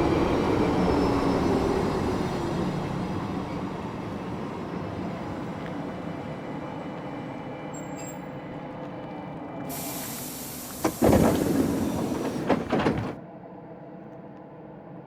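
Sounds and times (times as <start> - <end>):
train low rumble: 0.0 - 15.0
air hiss of train doors: 9.6 - 13.2.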